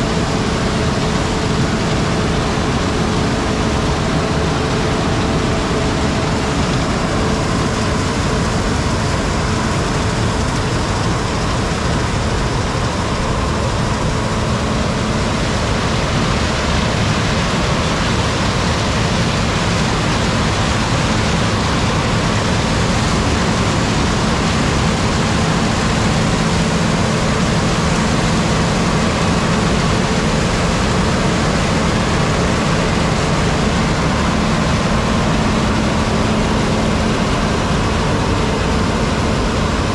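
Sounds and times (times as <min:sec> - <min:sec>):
farm machinery engine drone: 0:00.0 - 0:39.9.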